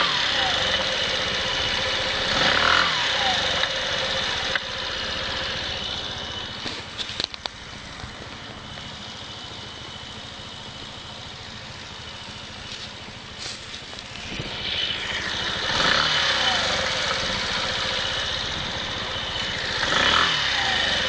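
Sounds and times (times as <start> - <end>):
motorcycle engine idling: 0.0 - 21.0
sharp clicks: 6.9 - 8.9.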